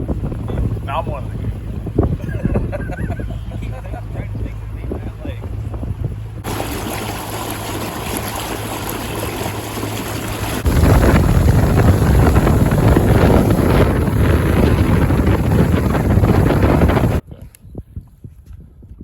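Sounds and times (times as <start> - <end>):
motorboat engine hum: 0.0 - 17.2
wind noise on microphone: 0.0 - 19.0.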